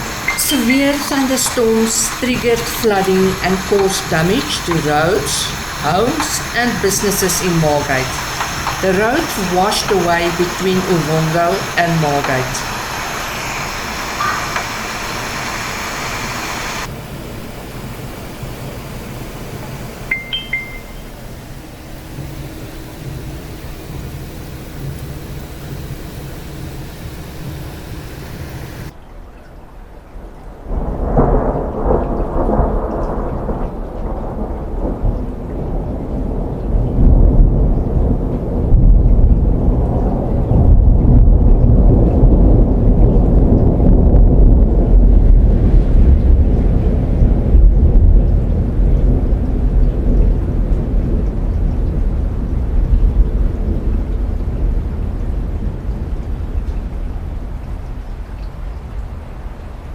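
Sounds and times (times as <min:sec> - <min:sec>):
rain hissing: 0:00.0 - 0:29.0, 0:30.7 - 0:59.9
low rumble of thunder: 0:30.4 - 0:59.9.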